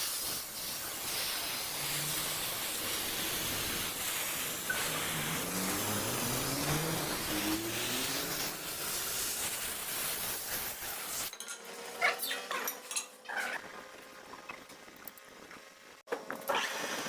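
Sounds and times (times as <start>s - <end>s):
machine hiss and rising hum: 0.0s - 11.3s.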